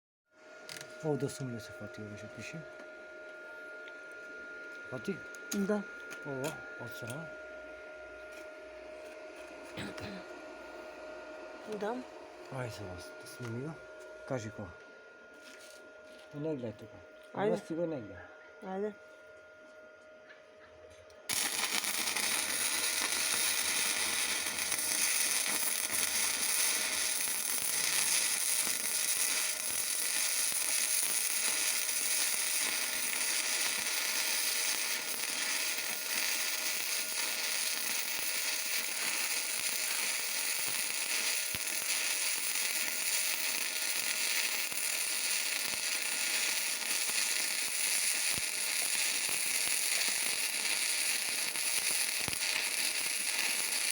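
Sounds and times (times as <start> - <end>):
welding arc crackling: 21.3 - 53.9.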